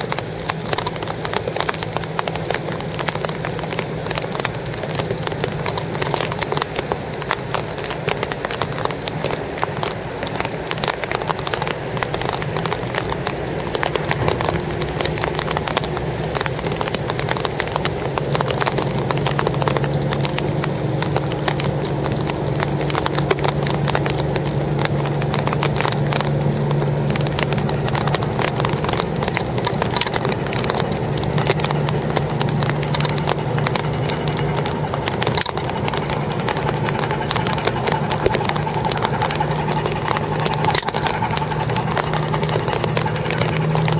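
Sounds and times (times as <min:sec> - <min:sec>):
boat engine knocking clatter: 0:00.0 - 0:43.9.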